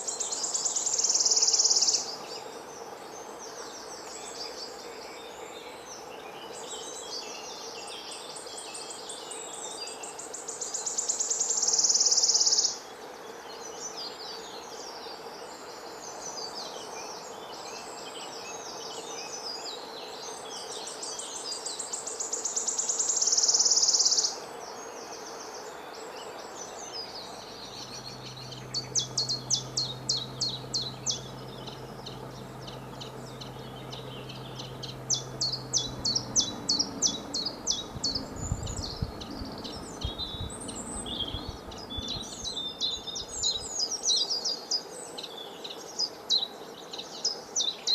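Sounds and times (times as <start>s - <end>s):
sharp evenly spaced bird notes: 26.5s - 45.9s
birds chattering: 26.6s - 44.4s
bird rapid high trill: 27.2s - 43.6s.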